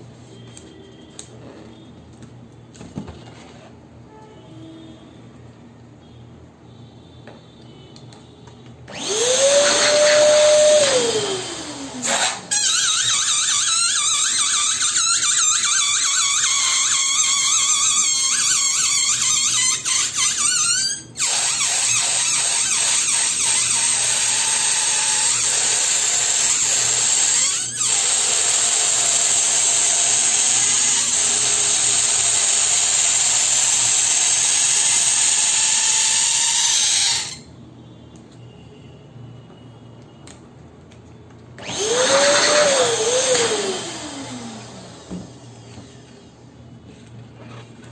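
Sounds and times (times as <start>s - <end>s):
electric pump motor whine: 8.9s - 14.4s, 41.6s - 46.2s.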